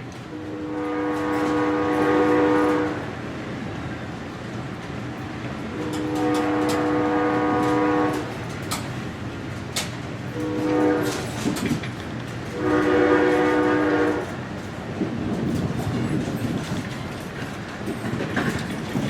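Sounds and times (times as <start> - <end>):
train wheels clattering on track: 0.0 - 19.0
train horn blasts: 0.3 - 3.1, 5.7 - 8.4, 10.3 - 11.5, 12.5 - 14.4.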